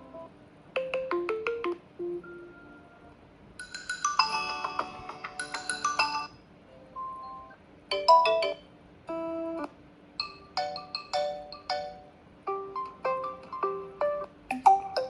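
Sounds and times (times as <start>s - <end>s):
electronic phone ringtone melodies: 3.6s - 6.3s, 10.2s - 12.1s, 12.7s - 15.0s.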